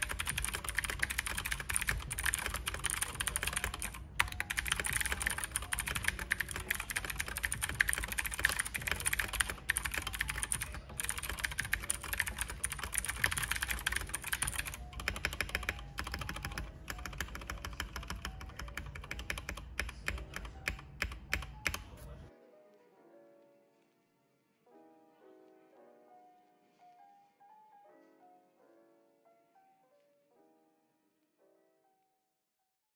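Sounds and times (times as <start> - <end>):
typing on clicky mechanical keyboard: 0.0 - 22.0.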